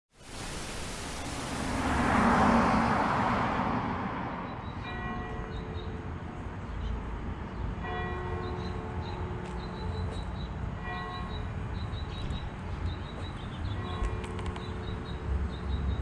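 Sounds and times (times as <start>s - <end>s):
rush of passing noise: 0.2s - 5.6s
city traffic rumble: 0.3s - 16.0s
church bell tolling: 4.8s - 5.7s.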